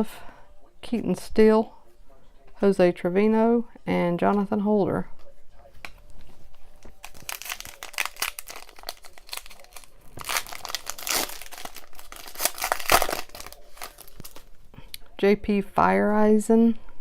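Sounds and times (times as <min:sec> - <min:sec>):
wrapper tearing and crinkling: 0:06.8 - 0:14.5.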